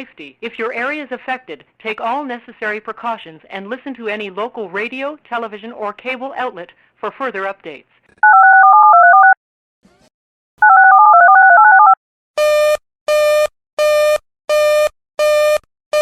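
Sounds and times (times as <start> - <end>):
warbling modem-like data tones: 10.6 - 12.0.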